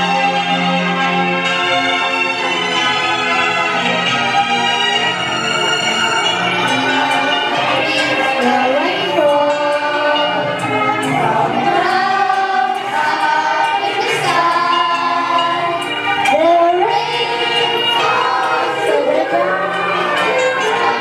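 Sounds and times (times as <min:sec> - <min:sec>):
children's choir singing: 0:04.6 - 0:21.0.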